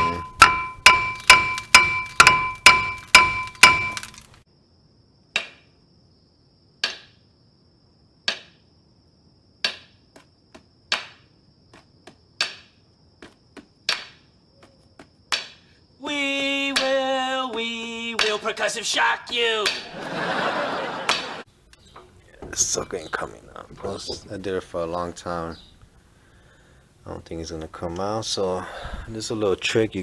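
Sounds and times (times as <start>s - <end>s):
hammer striking metal brake rotor: 0.0s - 4.2s.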